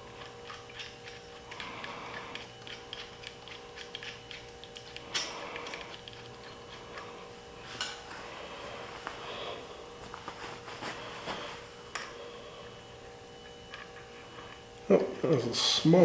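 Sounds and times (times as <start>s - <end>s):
metal tools ticking and clicking: 0.2s - 6.8s.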